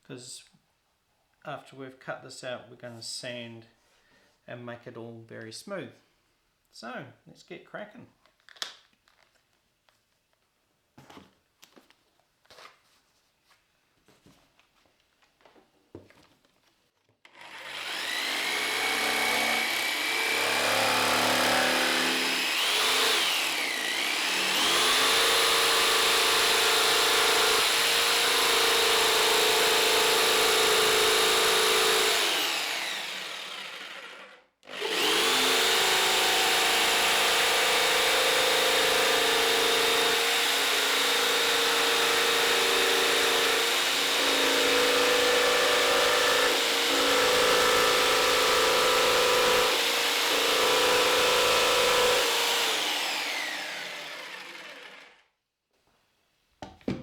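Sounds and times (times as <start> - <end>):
electric saw cutting: 17.3 - 55.2.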